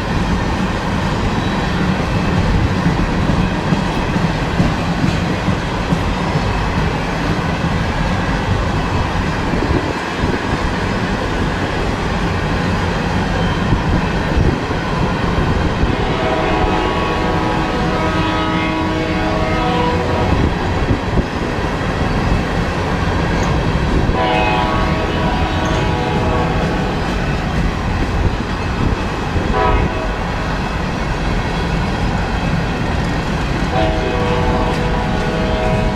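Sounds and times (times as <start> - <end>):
train rumbling past: 0.0 - 35.9
locomotive horn blast: 15.9 - 20.5, 24.2 - 27.0, 29.5 - 30.4, 33.7 - 35.9.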